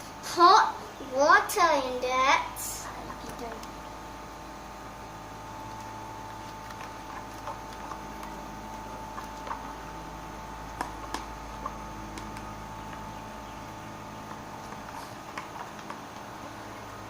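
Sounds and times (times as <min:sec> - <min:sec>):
steady background hum: 0:00.0 - 0:17.0
mixing tool tapping bowl: 0:05.6 - 0:17.0.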